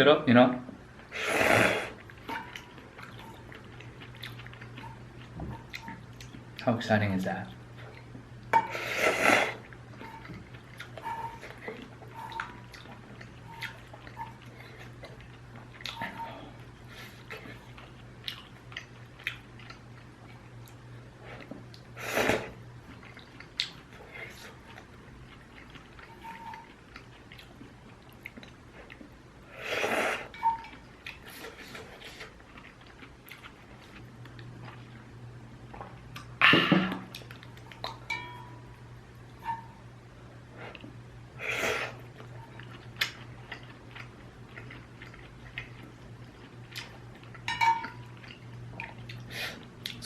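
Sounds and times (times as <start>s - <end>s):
slurping noodles: 1.1s - 2.0s, 8.7s - 9.6s
quiet chewing: 1.9s - 6.7s, 7.4s - 36.4s, 37.0s - 38.2s, 40.5s - 50.0s
noodle slurp: 8.7s - 10.2s.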